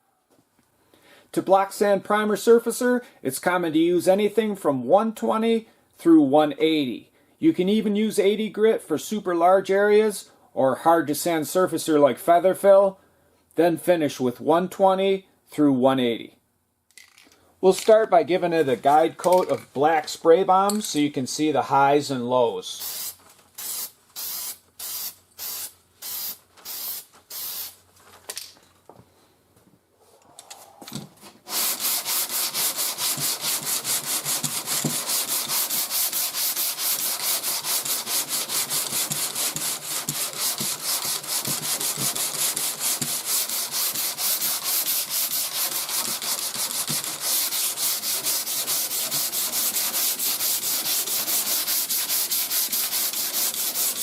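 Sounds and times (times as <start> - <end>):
aerosol spray can hissing: 22.8 - 27.8, 31.5 - 54.0
hand block sanding: 31.4 - 54.0.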